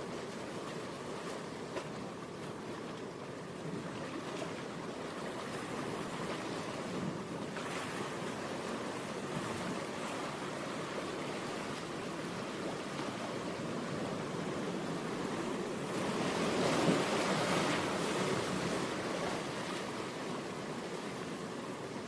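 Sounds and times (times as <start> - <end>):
surf-like rushing noise: 0.0 - 22.0.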